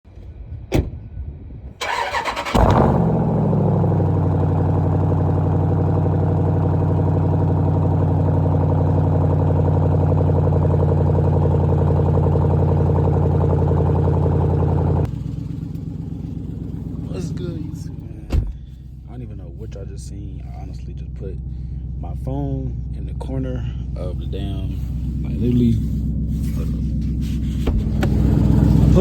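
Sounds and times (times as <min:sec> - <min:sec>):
engine cranking and idling: 0:01.8 - 0:29.0.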